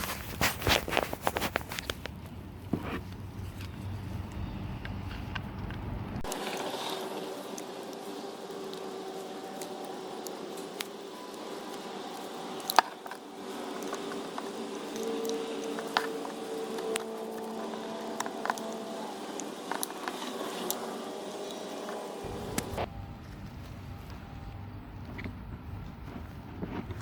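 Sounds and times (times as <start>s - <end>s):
hum of held tones: 6.2s - 26.0s.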